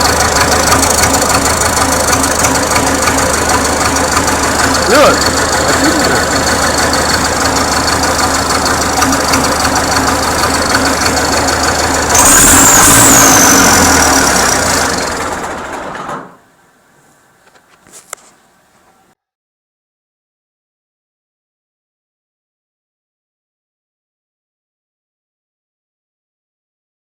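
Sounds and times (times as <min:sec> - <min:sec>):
tractor diesel engine revving: 0:00.0 - 0:16.6.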